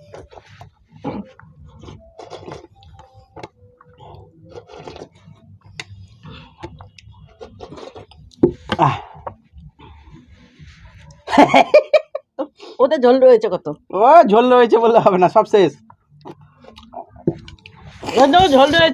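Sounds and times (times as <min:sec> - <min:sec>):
people chewing food: 0:00.0 - 0:11.6, 0:15.8 - 0:18.8.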